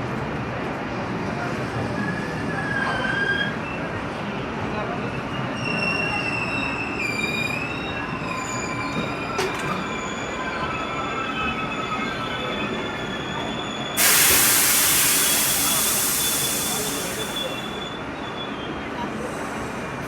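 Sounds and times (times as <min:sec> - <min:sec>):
train wheels squealing on rails: 0:01.5 - 0:20.0
loud hiss: 0:14.0 - 0:17.8
train rumble: 0:14.0 - 0:18.1.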